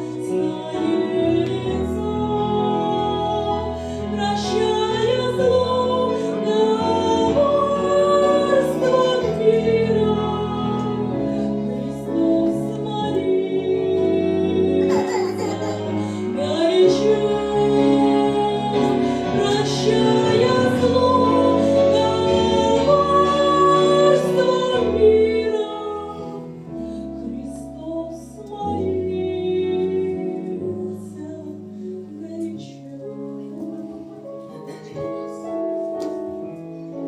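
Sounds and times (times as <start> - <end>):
person singing: 0.0 - 34.2.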